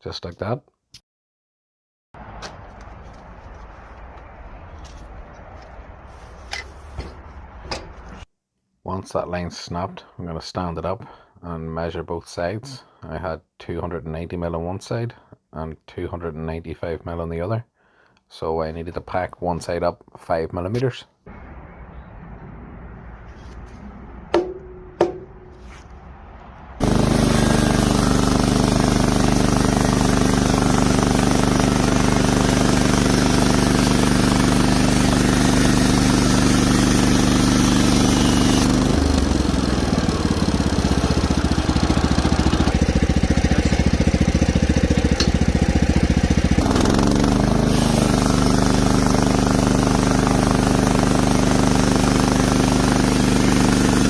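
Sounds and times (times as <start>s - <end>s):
sawmill engine running: 26.8s - 54.0s.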